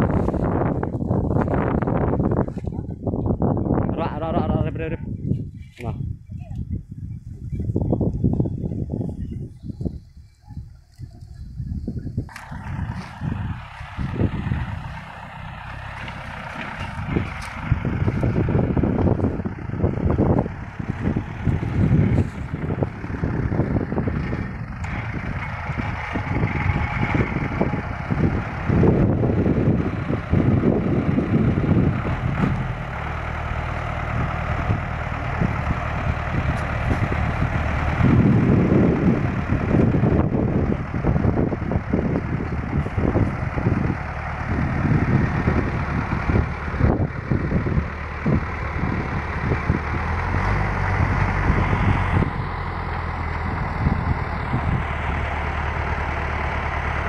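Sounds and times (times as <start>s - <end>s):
truck engine revving: 11.5s - 57.0s.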